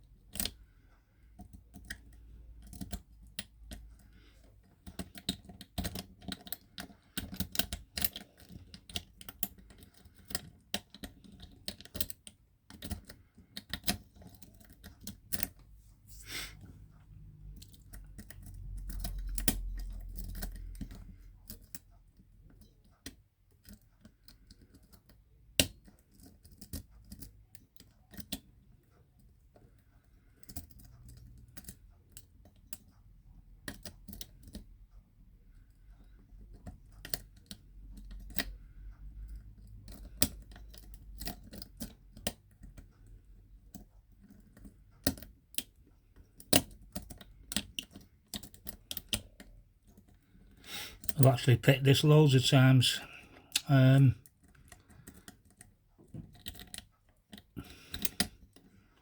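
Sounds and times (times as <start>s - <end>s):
lock pick clicking and scraping: 0.3s - 0.6s, 1.4s - 15.6s, 17.6s - 21.8s, 22.5s - 28.4s, 33.6s - 34.6s, 36.2s - 38.6s, 39.3s - 50.2s, 54.3s - 58.7s.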